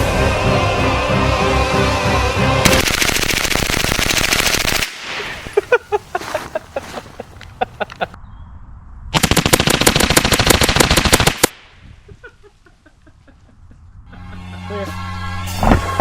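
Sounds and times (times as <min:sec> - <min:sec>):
music: 0:00.0 - 0:02.8, 0:14.1 - 0:16.0
rapid gunshots: 0:02.7 - 0:05.2, 0:09.2 - 0:11.6.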